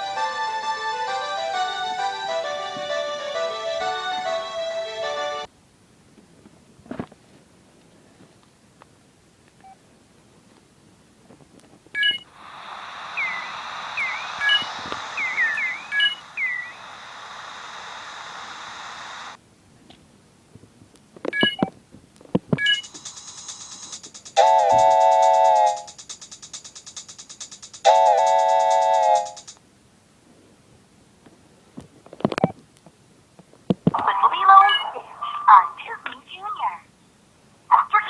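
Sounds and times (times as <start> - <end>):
short falling chirps: 12.0 - 17.1
steady hiss: 12.2 - 19.5, 22.7 - 31.8.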